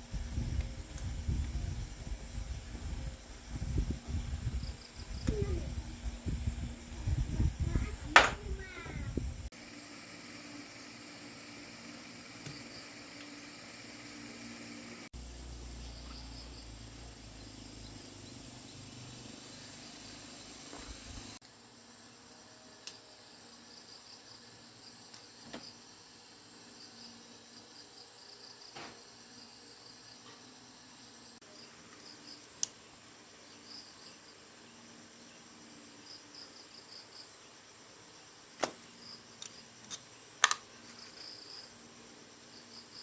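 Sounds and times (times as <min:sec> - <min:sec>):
insects chirping: 0:00.0 - 0:43.0.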